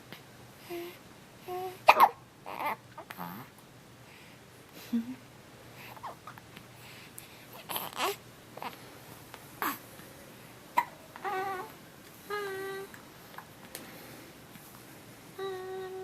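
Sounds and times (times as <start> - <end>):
baby hiccupping: 1.9 - 3.3, 7.6 - 8.8, 9.6 - 9.8, 10.8 - 11.7
baby whining: 2.5 - 3.4, 7.5 - 8.8, 9.6 - 9.8, 10.8 - 13.0, 15.4 - 16.0.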